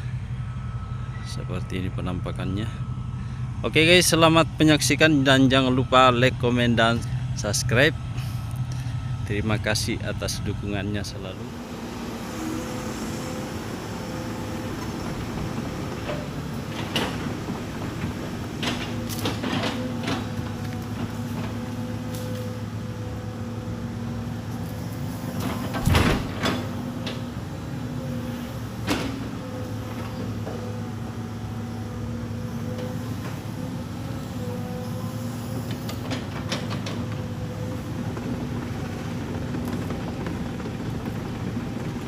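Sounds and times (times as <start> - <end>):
excavator diesel engine running: 0.0 - 42.0
logs knocking and clunking: 38.0 - 42.0.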